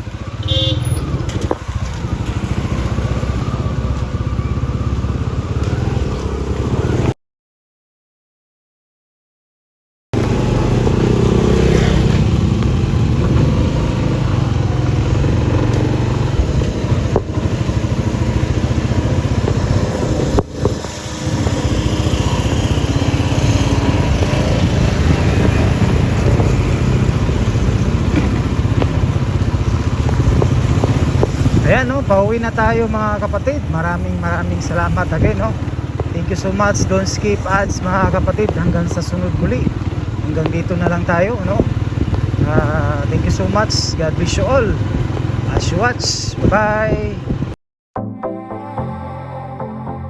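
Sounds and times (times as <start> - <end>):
vehicle engine running: 0.0 - 7.1, 10.2 - 47.6
wind rushing over microphone: 0.0 - 7.1, 10.2 - 47.6.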